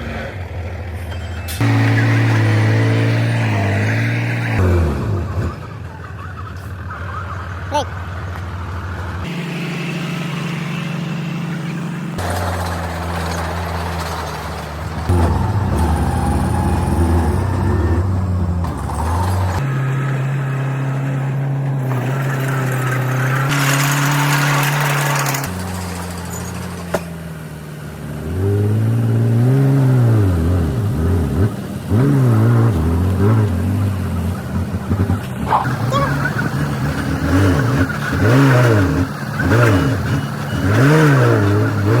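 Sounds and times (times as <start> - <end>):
diesel machinery engine running: 0.0 - 42.0.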